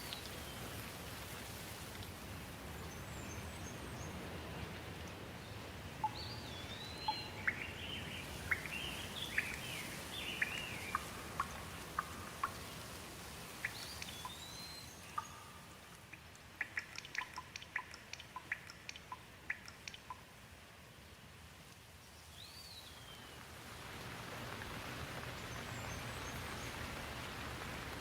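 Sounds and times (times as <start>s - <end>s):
rain hissing: 0.0s - 28.0s
bird whistling calls: 6.0s - 11.0s.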